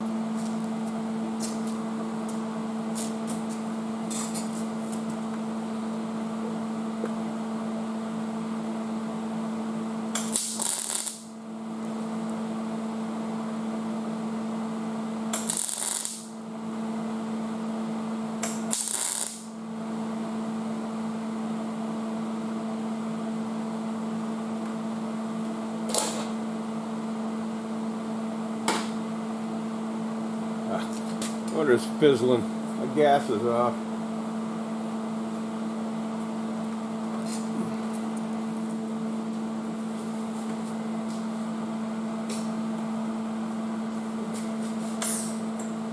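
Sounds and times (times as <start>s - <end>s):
welder humming: 10.1s - 12.4s, 15.3s - 16.5s, 18.4s - 19.6s
crackling welding arc: 10.2s - 11.4s, 15.4s - 16.4s, 18.4s - 19.6s.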